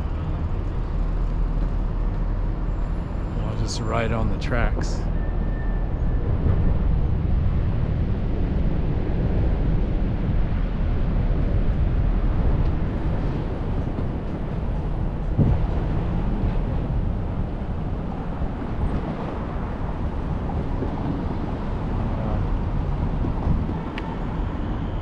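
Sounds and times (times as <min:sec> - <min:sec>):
low rumble of rail riding: 0:00.0 - 0:25.0
wind on microphone: 0:05.8 - 0:25.0.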